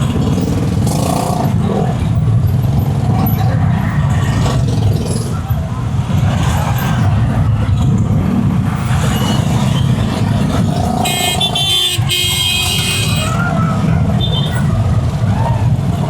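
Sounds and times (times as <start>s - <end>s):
road traffic rumble: 0.0s - 16.0s
vehicle horn honking: 11.0s - 13.4s.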